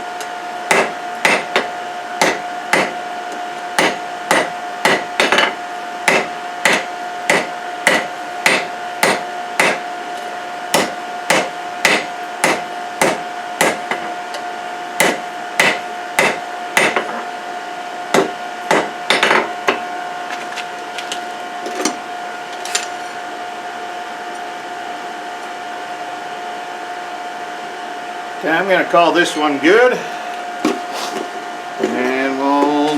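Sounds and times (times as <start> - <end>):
steady hum: 0.0 - 32.9
hammer striking hot steel on anvil: 0.7 - 3.0, 3.7 - 9.9, 10.7 - 14.1, 15.0 - 17.2, 18.1 - 19.8.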